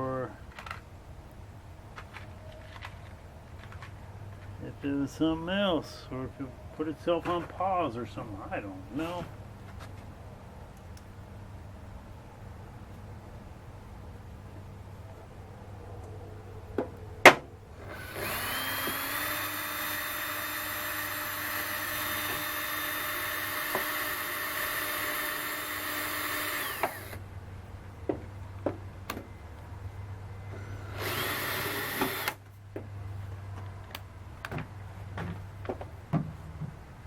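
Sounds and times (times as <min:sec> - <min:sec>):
power drill running: 0:17.7 - 0:27.2, 0:30.5 - 0:32.4.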